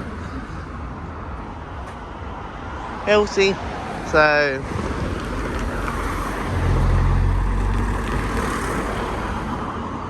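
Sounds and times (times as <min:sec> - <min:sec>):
road noise: 0:00.0 - 0:10.0
vehicle engine hum passing: 0:03.6 - 0:10.0.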